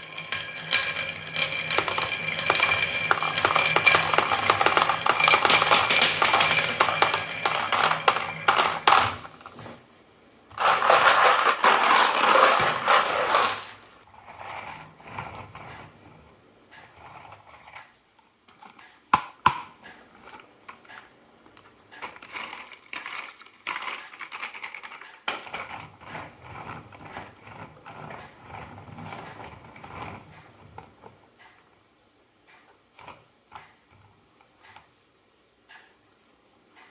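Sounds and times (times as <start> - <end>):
marbles clattering down wooden run: 0.0 - 9.8, 10.6 - 14.0, 22.0 - 26.3.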